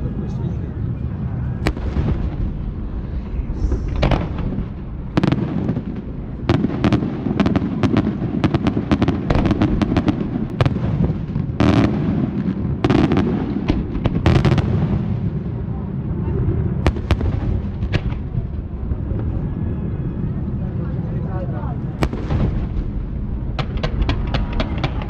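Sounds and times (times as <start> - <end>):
low rumble of launches and booms: 0.0 - 25.0
fireworks bangs and pops: 3.8 - 15.3, 16.8 - 18.6, 22.0 - 25.0.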